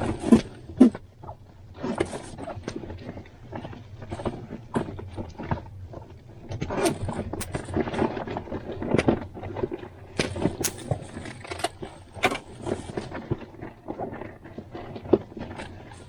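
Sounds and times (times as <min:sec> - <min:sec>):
knocks clicks and clatter: 0:10.2 - 0:12.4.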